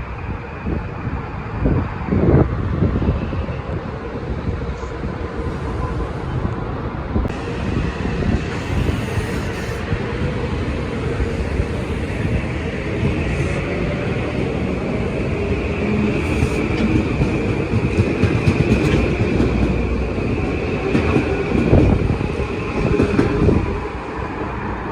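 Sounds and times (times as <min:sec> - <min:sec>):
train rumbling by: 0:00.0 - 0:24.9.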